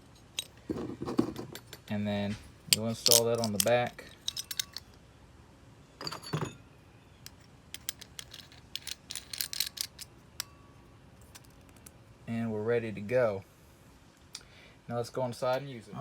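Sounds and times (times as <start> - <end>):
metal clicks and rattles: 2.7 - 5.0, 7.3 - 10.5.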